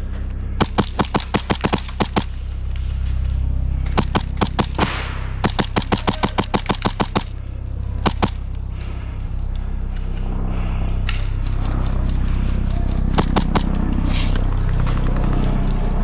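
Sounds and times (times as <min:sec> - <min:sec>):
airsoft guns firing: 0:00.6 - 0:02.4, 0:03.9 - 0:07.4, 0:08.0 - 0:08.4, 0:13.1 - 0:13.8.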